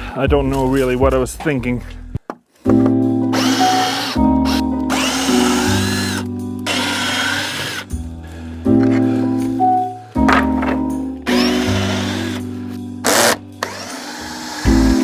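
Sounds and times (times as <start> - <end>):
background music: 0.0 - 15.0
cordless drill backing out screws: 3.4 - 7.9, 10.3 - 12.5, 13.1 - 14.8.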